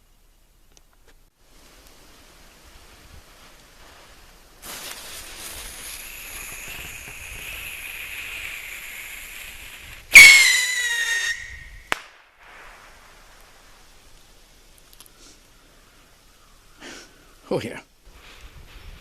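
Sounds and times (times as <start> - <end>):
fuse hissing: 3.6 - 11.8
rocket whistle falling in pitch: 10.1 - 12.2
sharp pop: 11.9 - 12.3.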